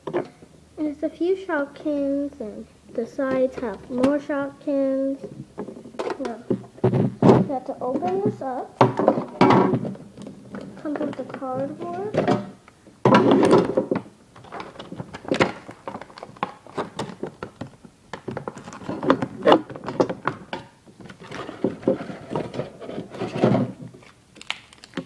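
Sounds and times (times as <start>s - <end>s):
cardboard packaging rustling: 14.4s - 19.8s, 21.0s - 25.0s.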